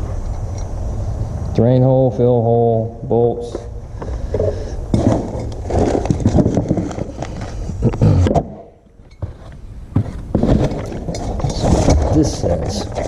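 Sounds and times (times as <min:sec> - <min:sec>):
rustling packaging: 0:05.0 - 0:07.8, 0:09.2 - 0:13.0.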